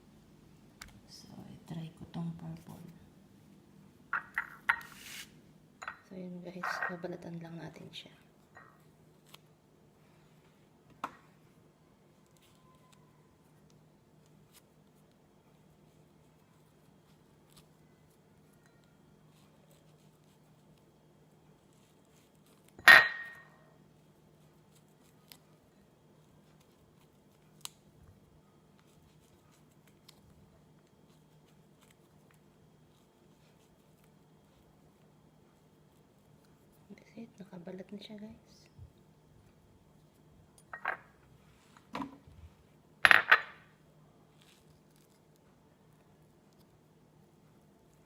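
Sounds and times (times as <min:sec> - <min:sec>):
low steady hum: 0:00.0 - 0:48.0
fruit being peeled by hand: 0:04.2 - 0:05.4, 0:08.3 - 0:09.7, 0:11.9 - 0:22.8, 0:23.7 - 0:38.1, 0:44.0 - 0:48.0.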